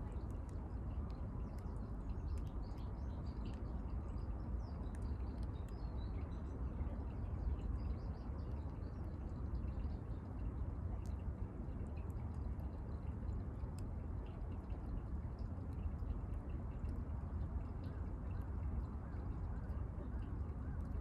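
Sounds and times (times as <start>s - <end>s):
faint light clicks: 0.0s - 6.3s, 10.5s - 21.0s.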